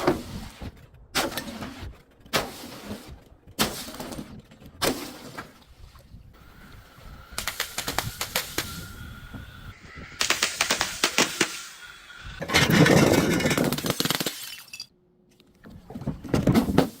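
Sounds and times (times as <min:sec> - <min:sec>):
glass bottle crushing: 0:12.4 - 0:14.9.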